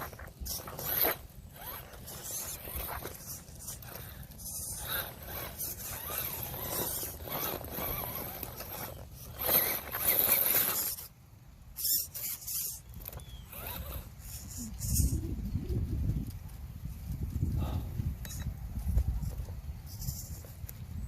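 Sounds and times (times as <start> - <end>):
electric toy car motor whirring: 0.0 - 15.2, 19.2 - 20.5.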